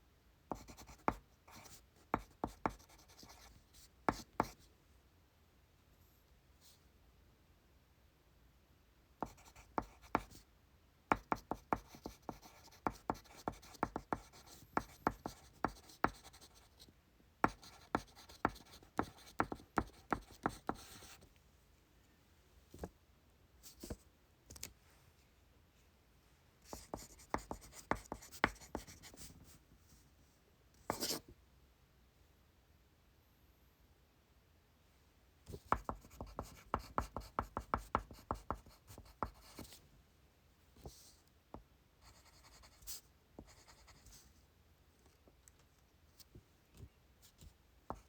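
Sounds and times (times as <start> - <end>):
pencil writing on paper: 0.5 - 4.6, 9.2 - 10.4, 11.1 - 16.8, 17.4 - 21.2, 26.7 - 29.3, 30.9 - 31.2, 35.6 - 39.8, 42.0 - 44.2.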